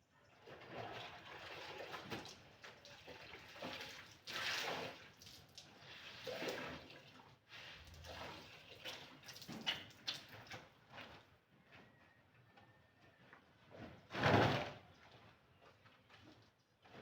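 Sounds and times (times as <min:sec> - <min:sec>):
water sloshing as clothes scrubbed: 0:00.5 - 0:11.4.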